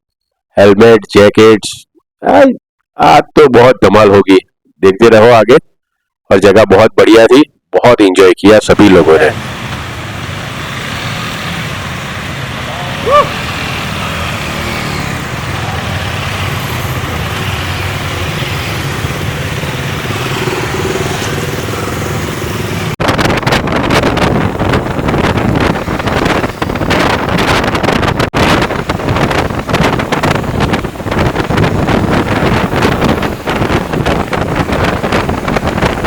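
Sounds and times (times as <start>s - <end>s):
motorcycle engine and road noise: 8.8s - 36.0s
wind buffeting microphone: 9.3s - 36.0s.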